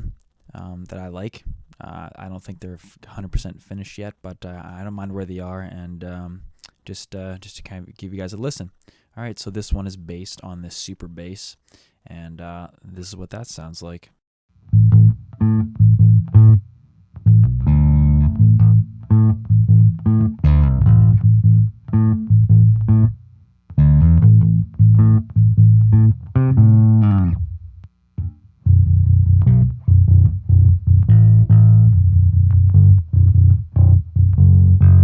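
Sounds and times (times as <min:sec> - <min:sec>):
electric bass riff: 0:14.6 - 0:35.0
bass note sliding down: 0:14.8 - 0:16.6, 0:17.2 - 0:23.2, 0:23.8 - 0:35.0.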